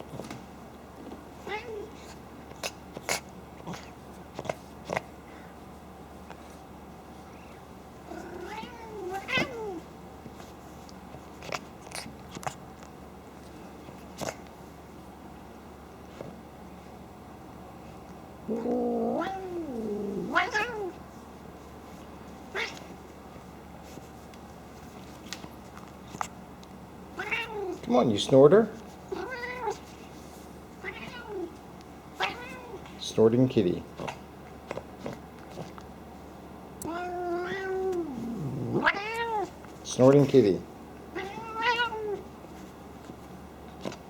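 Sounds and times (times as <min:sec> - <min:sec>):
cat snorting: 0:02.0 - 0:05.1, 0:18.5 - 0:20.5
cat yowling: 0:08.1 - 0:09.8, 0:18.5 - 0:21.0, 0:29.1 - 0:29.8, 0:32.2 - 0:32.8, 0:36.8 - 0:39.5, 0:41.2 - 0:42.2.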